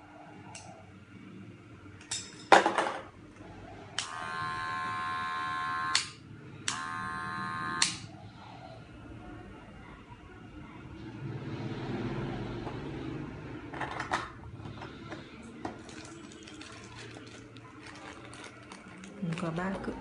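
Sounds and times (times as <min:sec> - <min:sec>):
hair clipper buzzing: 0:04.0 - 0:08.1.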